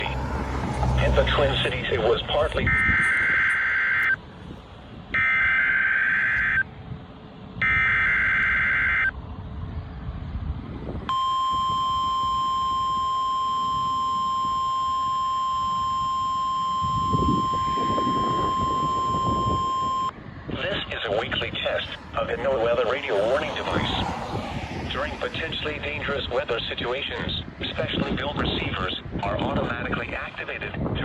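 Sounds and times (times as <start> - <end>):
steady warning alarm tone: 2.6 - 4.2, 11.1 - 20.1
data tone bursts: 11.1 - 20.1.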